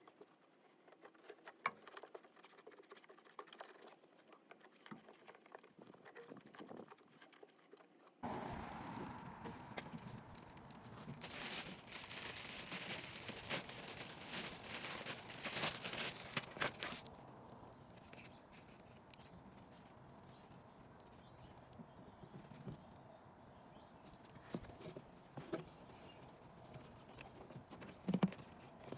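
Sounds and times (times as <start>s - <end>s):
plastic parts clicking and rustling: 9.6s - 17.1s.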